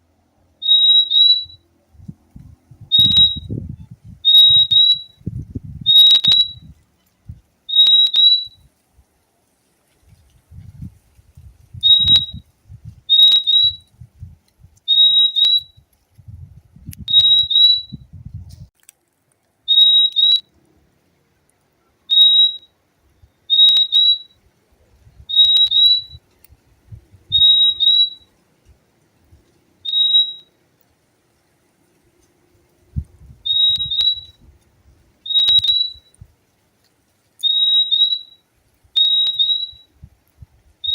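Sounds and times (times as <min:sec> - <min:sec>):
bird whistled calls: 0:00.6 - 0:01.6, 0:02.9 - 0:05.2, 0:05.8 - 0:06.7, 0:07.7 - 0:08.7, 0:11.7 - 0:12.4, 0:13.1 - 0:13.9, 0:14.9 - 0:15.8, 0:17.0 - 0:18.0, 0:19.7 - 0:20.5, 0:22.1 - 0:24.4, 0:25.2 - 0:26.2, 0:27.3 - 0:28.3, 0:29.8 - 0:30.6, 0:33.4 - 0:34.4, 0:35.2 - 0:36.2, 0:37.4 - 0:39.9.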